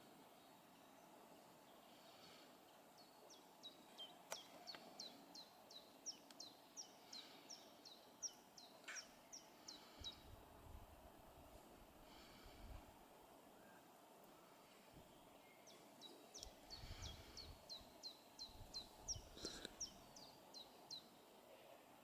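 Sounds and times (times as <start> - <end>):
faint outdoor hiss: 0.0 - 22.0
small bird singing: 2.9 - 10.3, 15.1 - 21.3.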